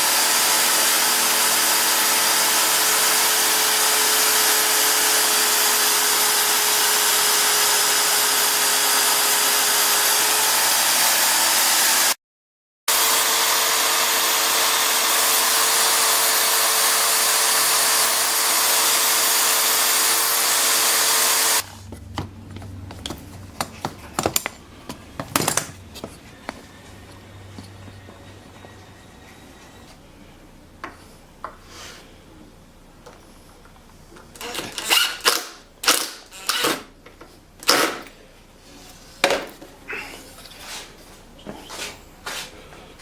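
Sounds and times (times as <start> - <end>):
electric power tool whining: 0.0 - 12.2, 12.9 - 21.8.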